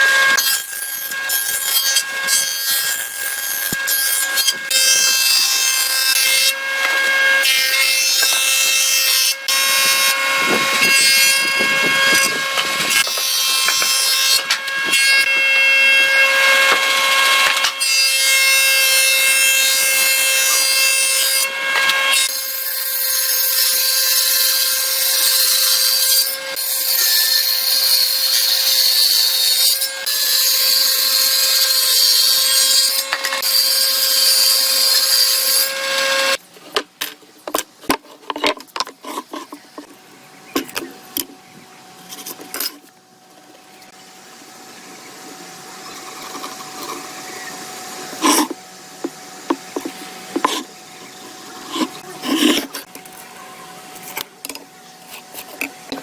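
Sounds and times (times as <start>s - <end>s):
power tool whining on wood: 0.0s - 36.4s
wood and tools knocking: 48.2s - 50.6s.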